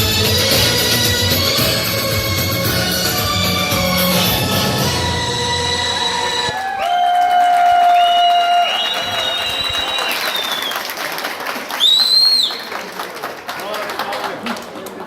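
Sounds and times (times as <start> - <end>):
dance music: 0.0 - 6.6
guests applauding and cheering: 5.8 - 15.0
long held whistles: 5.9 - 10.9, 11.8 - 12.7
sharp rising whistle: 7.8 - 10.8.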